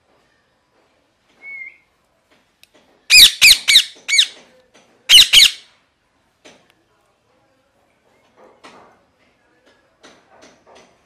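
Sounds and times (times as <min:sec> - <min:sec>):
parakeet screeching: 0:03.1 - 0:04.4, 0:05.1 - 0:05.7.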